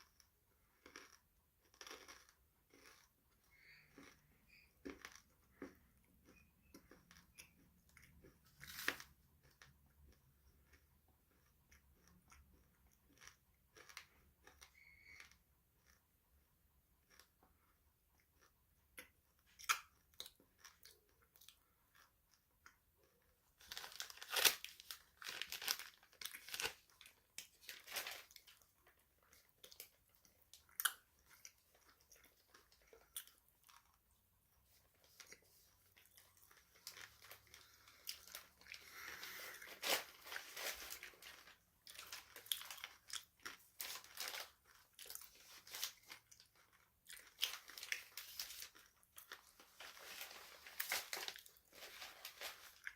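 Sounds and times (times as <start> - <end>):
chewing crunchy food: 0.0 - 52.9.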